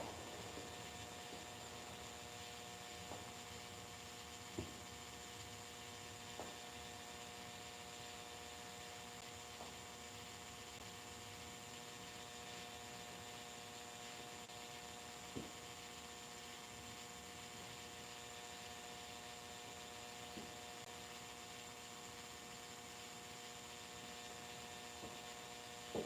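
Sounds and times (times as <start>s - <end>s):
electrical hum: 0.0s - 7.3s
light rain hiss: 0.0s - 7.3s.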